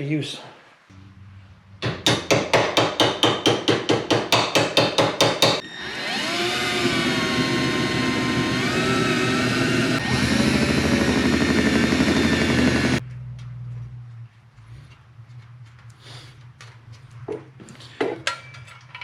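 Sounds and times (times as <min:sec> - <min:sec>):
hammer on sheet metal: 0:01.8 - 0:05.6
power tool motor running: 0:05.4 - 0:13.0.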